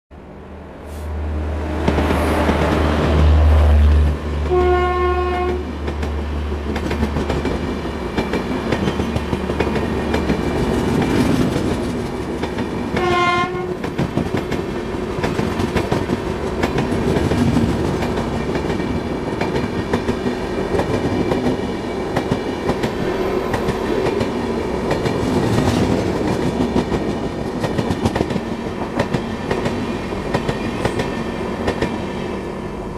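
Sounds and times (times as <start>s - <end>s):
train rumbling: 0.1s - 32.9s
train horn blasts: 4.4s - 5.8s, 13.0s - 13.9s
coaches clattering over rails: 5.4s - 13.1s.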